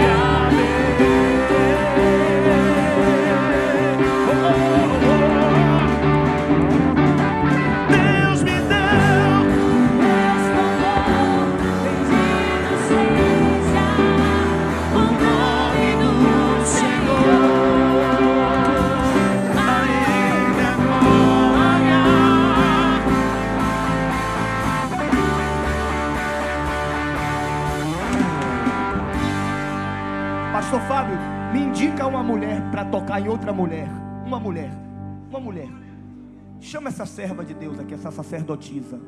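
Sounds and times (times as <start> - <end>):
person singing: 0.0 - 6.5, 7.8 - 23.8
guitar: 0.0 - 39.0
keyboard sustained chords: 0.0 - 39.0.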